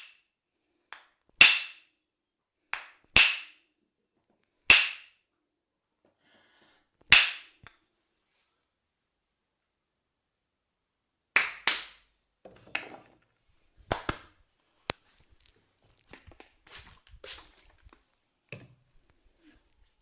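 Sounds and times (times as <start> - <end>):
percussive massage strikes: 11.4 - 12.0.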